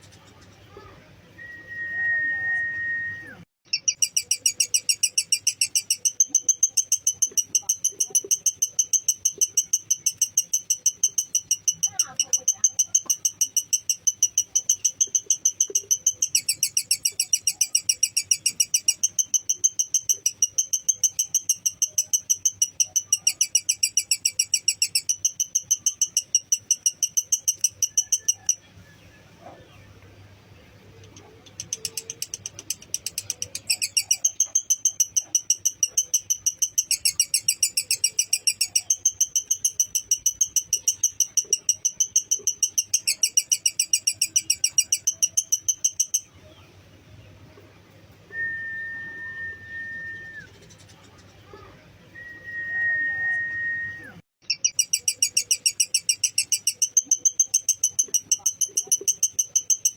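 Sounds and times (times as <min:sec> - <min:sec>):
lovebird shrill chattering call: 0:03.7 - 0:28.7, 0:31.1 - 0:46.4, 0:54.4 - 0:59.9.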